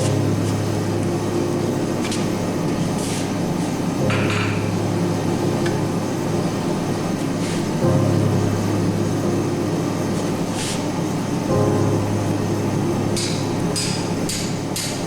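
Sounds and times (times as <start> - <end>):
background music drone: 0.0 - 15.0
hammer striking steel: 13.2 - 15.0.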